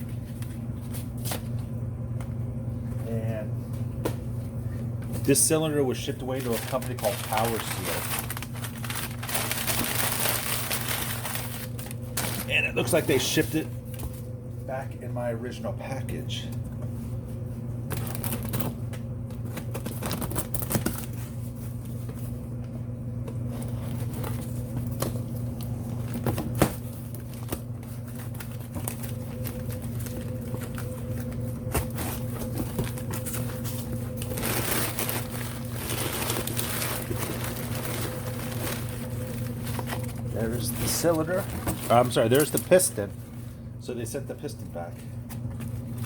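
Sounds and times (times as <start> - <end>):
low hum: 0.0 - 46.0
packing material crinkling: 5.3 - 13.4, 17.9 - 18.8, 19.5 - 21.9, 23.5 - 43.0.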